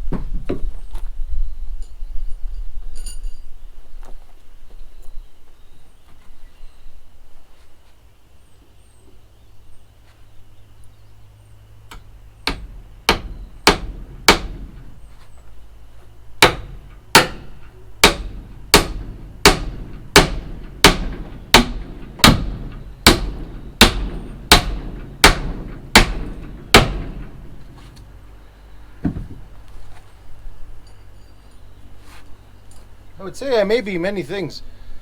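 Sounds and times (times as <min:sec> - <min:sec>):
hammer driving nail into timber: 0:11.9 - 0:15.1, 0:16.4 - 0:28.1.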